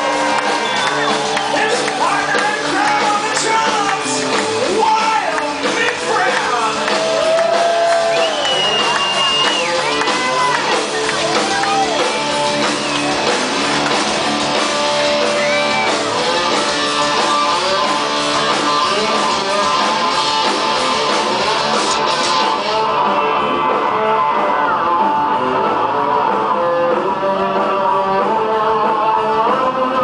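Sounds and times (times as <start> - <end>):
live rock band playing: 0.0 - 30.0.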